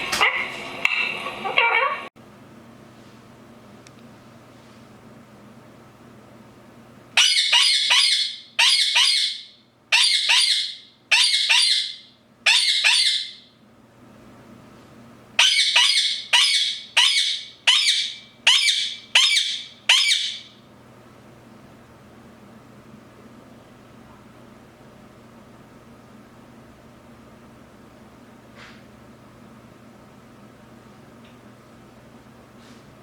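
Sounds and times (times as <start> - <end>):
parakeet screeching: 7.2 - 13.5, 15.4 - 20.6.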